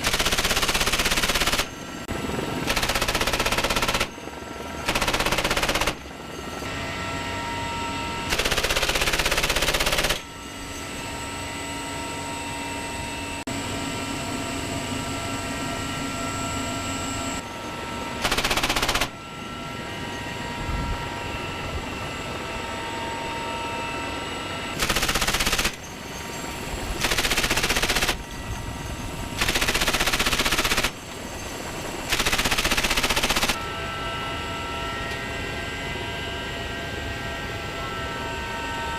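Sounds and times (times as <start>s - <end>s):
machine-gun bursts: 0.0s - 1.7s, 2.7s - 4.2s, 4.8s - 6.0s, 8.3s - 10.2s, 18.2s - 19.2s, 24.8s - 25.9s, 27.0s - 28.2s, 29.4s - 31.1s, 32.0s - 33.6s
helicopter turbine whine: 0.0s - 38.9s.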